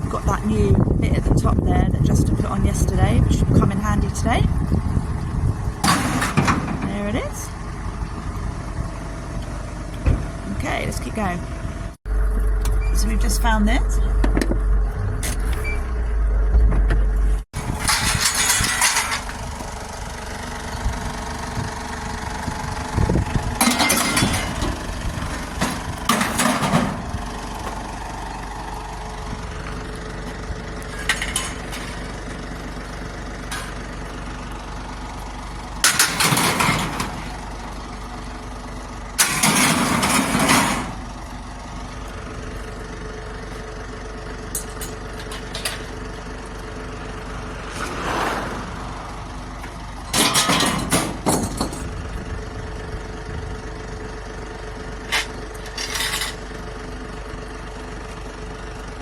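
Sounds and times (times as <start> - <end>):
truck engine idling: 0.0 - 59.0
loud clattering bangs: 5.8 - 7.0, 35.8 - 37.4, 50.0 - 51.9.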